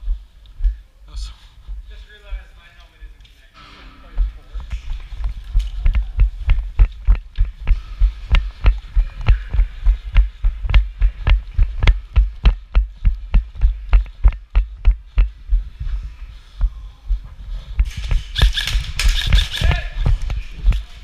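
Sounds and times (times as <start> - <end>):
running footsteps: 4.1 - 21.0
gear rattling: 17.8 - 21.0.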